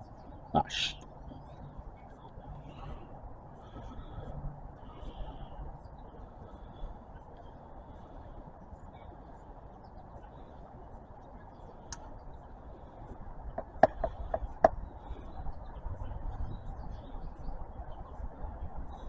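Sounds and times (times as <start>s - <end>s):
sharp clicks and taps: 13.6s - 14.8s.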